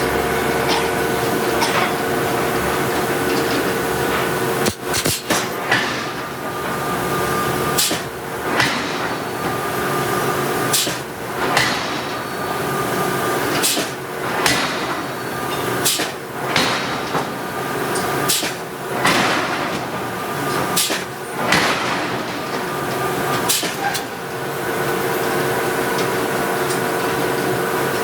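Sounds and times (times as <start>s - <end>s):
machinery hum: 0.0s - 28.0s
forging hammer heavy blows: 2.6s - 12.9s.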